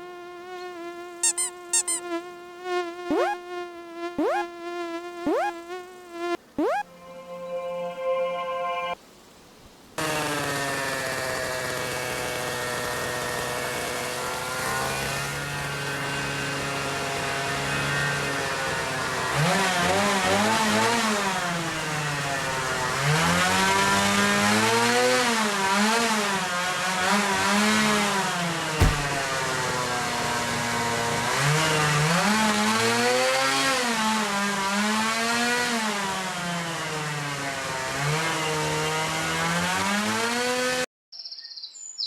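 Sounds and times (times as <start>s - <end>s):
motorcycle-like engine revving: 10.0s - 40.8s.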